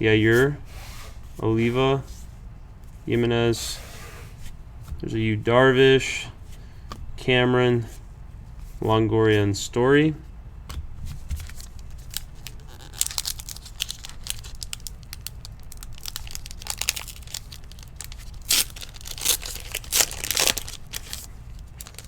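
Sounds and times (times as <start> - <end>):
foil wrapper crinkling: 11.2 - 22.0.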